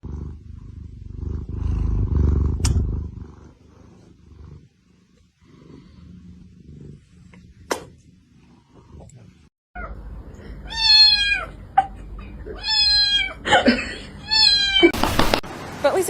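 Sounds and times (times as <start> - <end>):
cat purring: 0.0 - 9.5
sharp click: 2.6 - 2.9.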